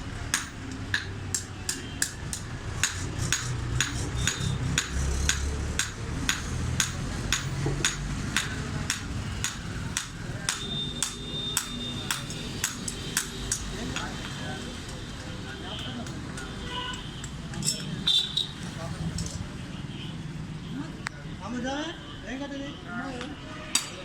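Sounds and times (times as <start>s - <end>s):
hammer striking iron on anvil: 0.3s - 14.1s.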